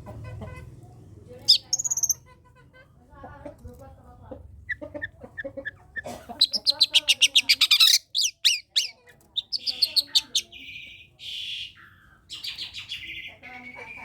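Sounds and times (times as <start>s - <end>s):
shrike singing: 1.4s - 2.2s, 6.4s - 14.0s.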